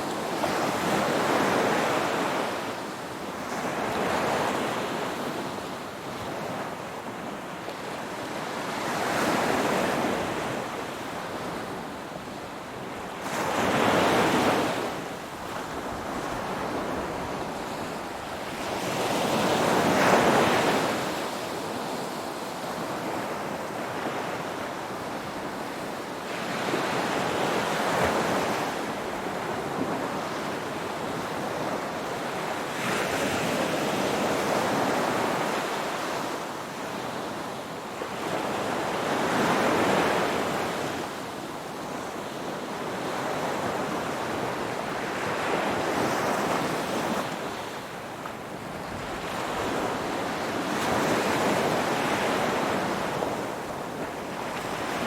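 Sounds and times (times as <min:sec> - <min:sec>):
ocean waves rolling in: 0:00.0 - 0:55.0.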